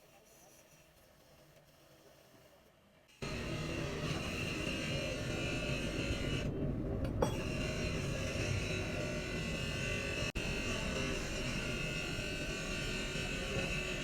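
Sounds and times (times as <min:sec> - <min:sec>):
small electric motor whirring: 0:03.1 - 0:06.6, 0:07.2 - 0:14.0.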